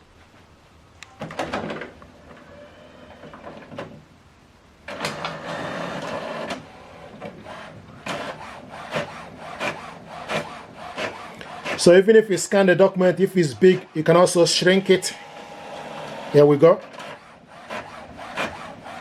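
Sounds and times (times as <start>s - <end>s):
printer clicking and whirring: 1.0s - 4.0s, 4.9s - 19.0s
printer sharp clunks: 1.2s - 2.0s, 4.9s - 11.9s, 15.2s - 19.0s.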